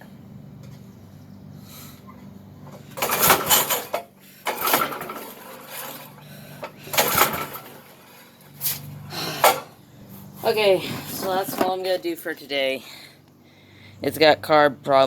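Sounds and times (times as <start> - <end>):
recoil starter pulled: 2.7 - 9.8.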